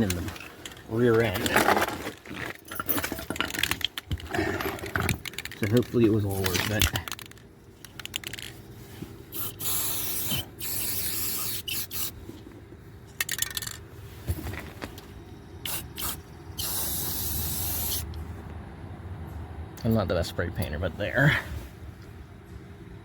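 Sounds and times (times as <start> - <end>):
spray paint can bursts: 9.3 - 12.2, 15.7 - 18.1.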